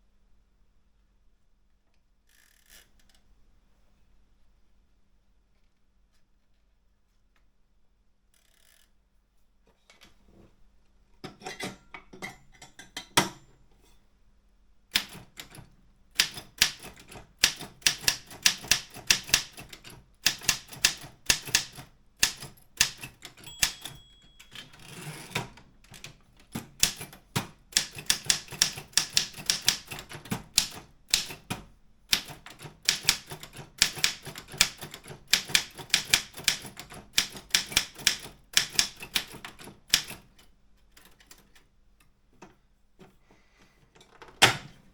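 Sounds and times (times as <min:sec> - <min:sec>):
manual typewriter key strikes: 0:14.9 - 0:41.6.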